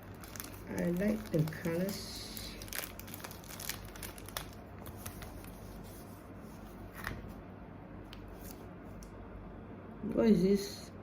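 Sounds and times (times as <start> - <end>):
plastic packaging rustling: 0.0 - 7.2.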